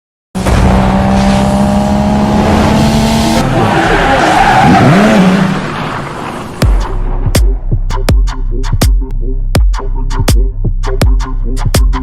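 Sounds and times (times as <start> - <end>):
racing engine: 0.4 - 6.8
tire squeal: 3.4 - 6.6.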